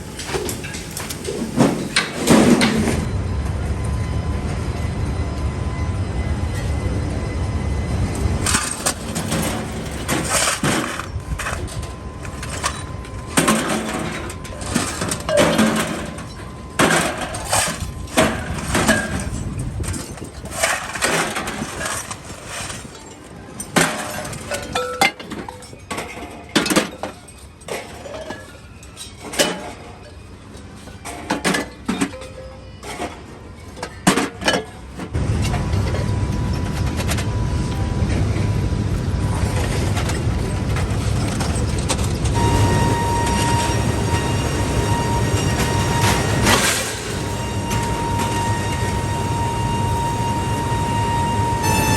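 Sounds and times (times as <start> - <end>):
scrap metal clanking: 8.4 - 37.3, 39.3 - 51.9
low machine rumble: 35.1 - 51.9.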